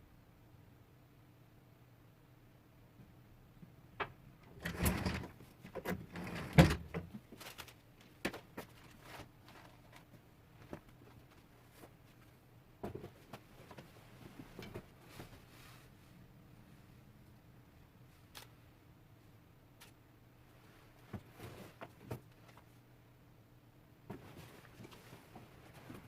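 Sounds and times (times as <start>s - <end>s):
scraping rattles: 4.5s - 7.7s.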